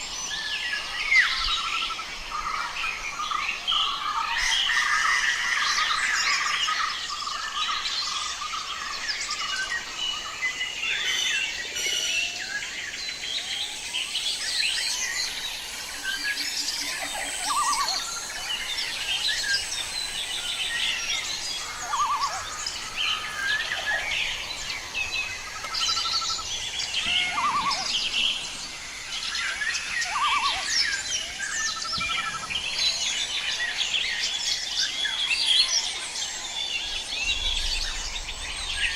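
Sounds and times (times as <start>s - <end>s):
birds chirping and whistling: 0.0s - 38.9s
rapid bird trills: 11.0s - 33.8s.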